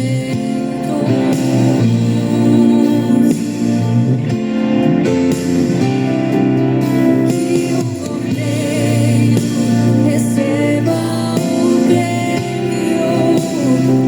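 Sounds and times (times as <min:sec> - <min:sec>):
instrumental accompaniment: 0:00.0 - 0:14.0
voices singing worship song: 0:00.0 - 0:14.0.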